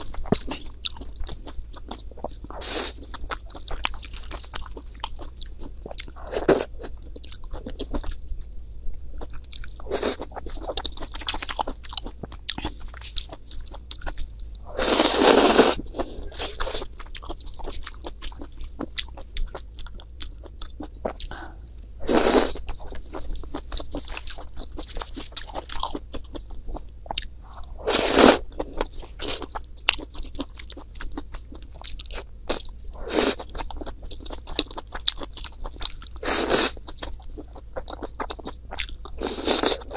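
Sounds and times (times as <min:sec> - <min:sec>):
person chewing: 0:00.0 - 0:39.9.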